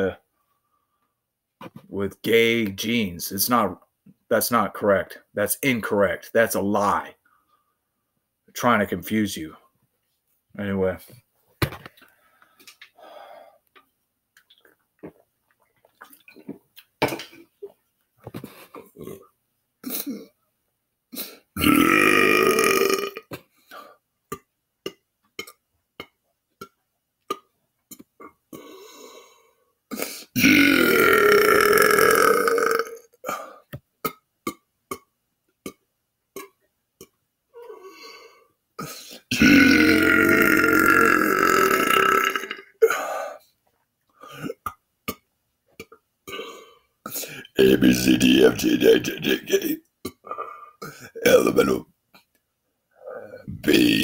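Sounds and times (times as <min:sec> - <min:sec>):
man belching: 0:19.0 - 0:19.3, 0:21.6 - 0:23.3, 0:30.4 - 0:33.4, 0:39.3 - 0:43.0, 0:47.4 - 0:51.9, 0:53.0 - 0:54.0.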